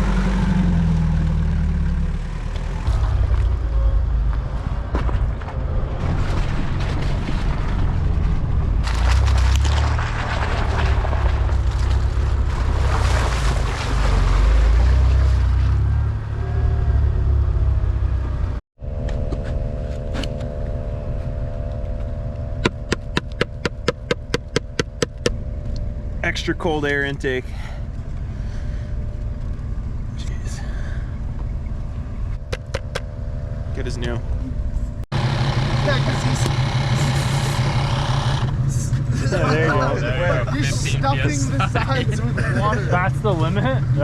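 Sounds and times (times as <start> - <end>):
truck engine rumble: 0.0 - 44.0
steady hum: 18.8 - 44.0.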